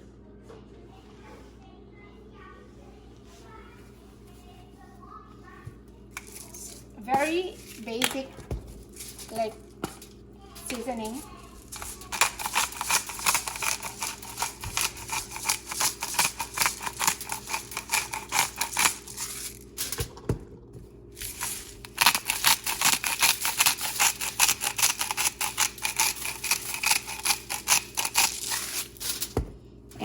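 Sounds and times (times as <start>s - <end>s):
seasoning being shaken or ground: 6.2s - 20.2s, 21.1s - 29.4s.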